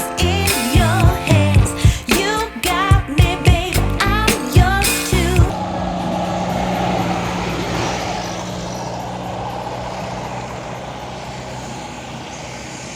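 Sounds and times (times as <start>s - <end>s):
vehicle engine running: 3.8s - 12.9s
tyre and road noise: 5.2s - 12.9s.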